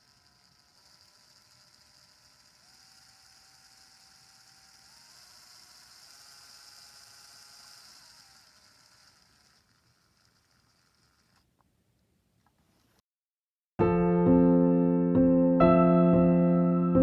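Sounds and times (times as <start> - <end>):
faint steady tones: 0.0 - 12.0.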